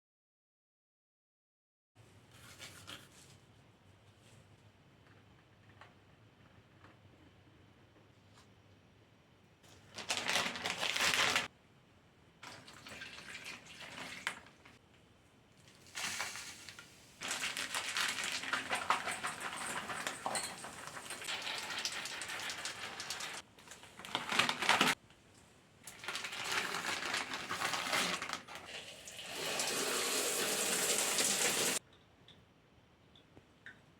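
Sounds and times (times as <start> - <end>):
water hissing and spraying: 29.4 - 31.8.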